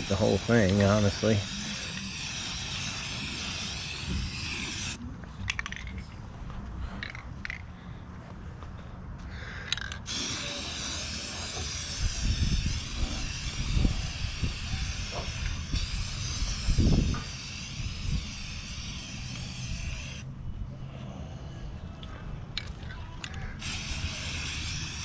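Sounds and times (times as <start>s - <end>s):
spray can hissing: 0.0s - 5.0s, 10.1s - 20.2s, 23.6s - 25.0s
wind on microphone: 12.0s - 18.6s.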